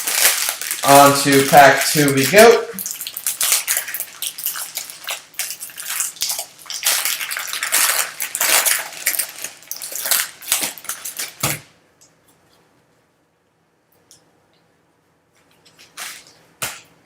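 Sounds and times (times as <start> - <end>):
foil wrapper tearing and crinkling: 0.0 - 11.5.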